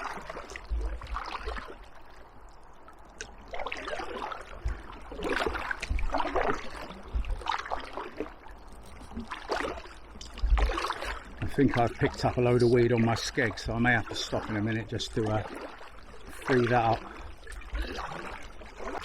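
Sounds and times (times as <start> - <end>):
kayak paddle strokes: 0.0 - 2.4, 3.1 - 19.0
water swishing along hull: 0.0 - 19.0.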